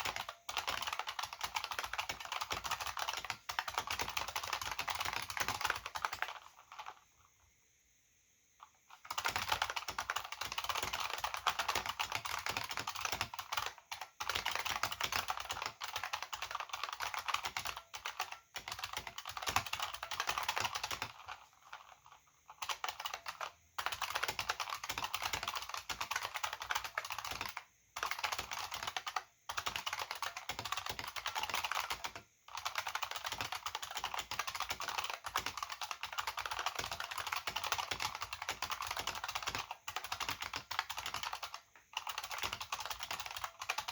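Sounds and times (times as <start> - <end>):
keyboard typing: 0.0 - 7.3, 8.6 - 43.9.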